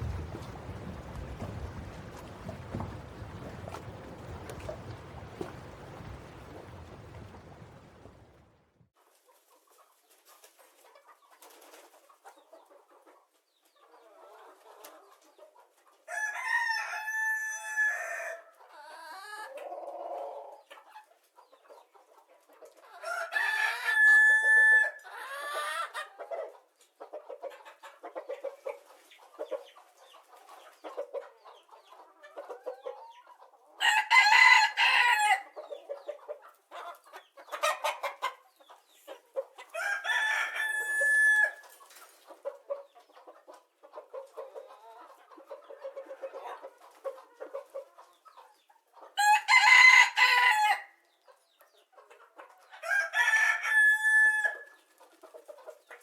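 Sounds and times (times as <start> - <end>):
chickens clucking: 0.0 - 16.1, 18.5 - 49.2, 51.1 - 53.5, 54.6 - 56.0
rooster crowing: 16.1 - 18.4, 23.0 - 25.5, 33.8 - 35.5, 39.8 - 41.6, 49.2 - 50.9, 52.8 - 54.8.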